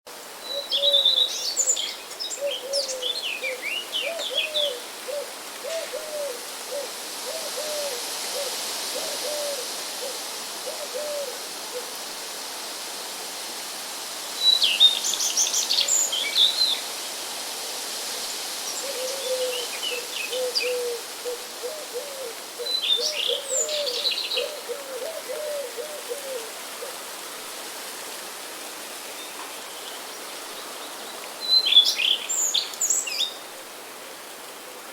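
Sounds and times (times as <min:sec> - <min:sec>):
wind: 0:00.0 - 0:34.9
rain: 0:00.1 - 0:34.9
songbirds chirping: 0:00.4 - 0:07.0, 0:18.7 - 0:27.1, 0:28.1 - 0:34.3.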